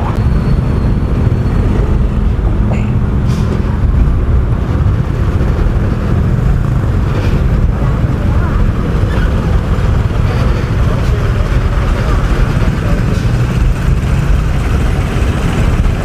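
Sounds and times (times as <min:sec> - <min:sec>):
road noise: 0:00.0 - 0:16.0
scooter engine: 0:00.0 - 0:16.0
wind buffeting microphone: 0:00.0 - 0:16.0.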